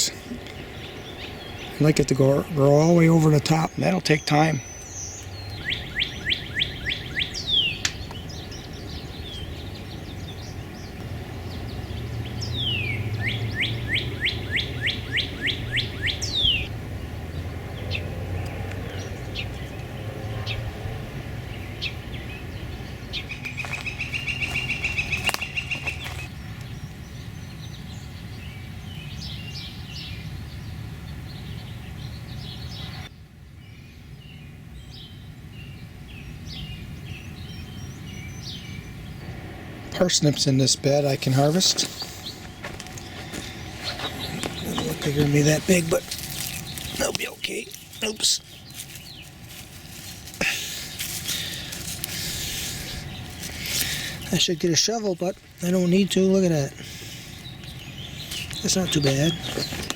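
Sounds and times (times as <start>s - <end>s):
bird chirps: 0.0s - 16.7s, 21.5s - 39.3s, 41.0s - 59.9s
bird trill: 0.0s - 16.7s, 21.5s - 33.1s
songbird whistling song: 3.5s - 16.7s, 21.7s - 39.2s
low steady rumble: 7.0s - 58.6s.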